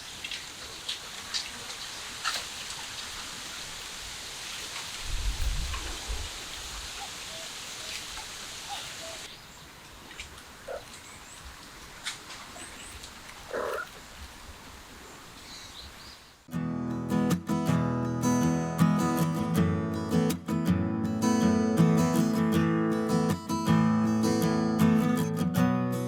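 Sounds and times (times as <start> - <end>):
steady hiss: 0.0 - 16.4
acoustic guitar music: 16.5 - 26.0.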